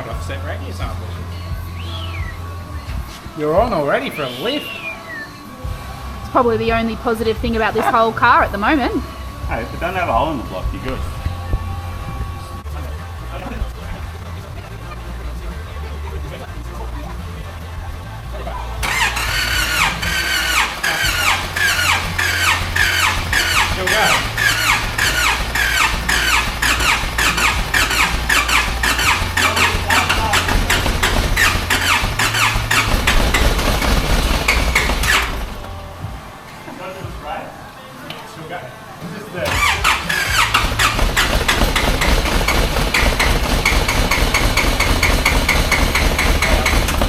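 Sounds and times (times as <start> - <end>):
diesel engine running: 0.0 - 36.4, 39.5 - 47.0
high squeak falling in pitch: 4.1 - 5.5.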